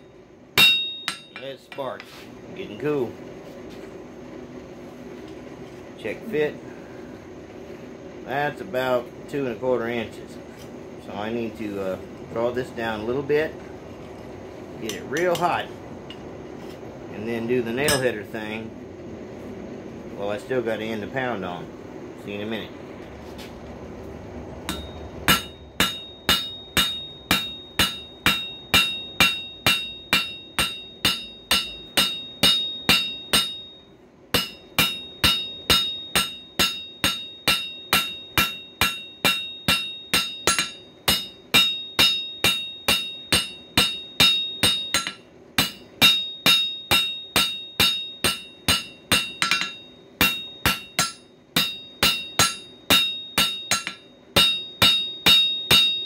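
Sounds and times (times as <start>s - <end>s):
hammer striking steel on anvil: 0.6s - 2.1s, 17.8s - 18.2s, 24.7s - 56.0s.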